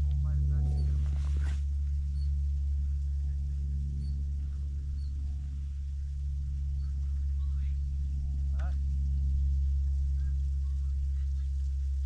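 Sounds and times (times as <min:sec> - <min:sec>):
steady low hum: 0:00.0 - 0:12.0
faint high-pitched chirps: 0:00.4 - 0:08.8.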